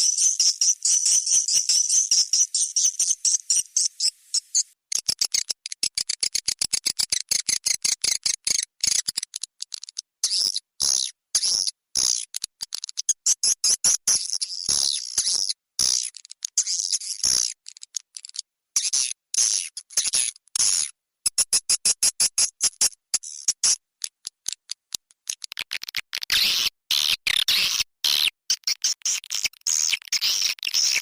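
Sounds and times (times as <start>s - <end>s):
swiftlet chirping and twittering: 0.0s - 4.8s.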